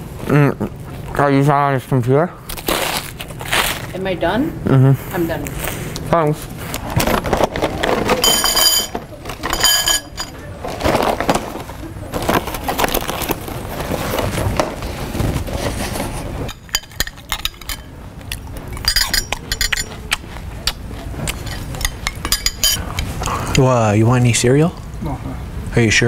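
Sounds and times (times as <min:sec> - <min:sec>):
cereal crunching and clinking: 0:16.5 - 0:22.8.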